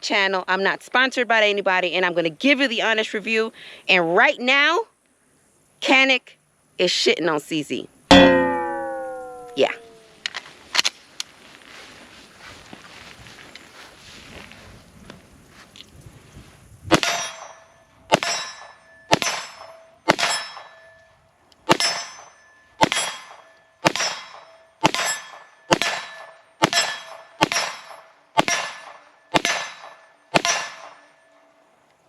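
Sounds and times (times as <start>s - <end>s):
steel target ringing: 8.1s - 10.0s, 17.0s - 21.0s, 21.7s - 31.5s
pistol shots: 16.9s - 17.5s, 18.1s - 20.8s, 21.7s - 22.2s, 22.8s - 31.1s.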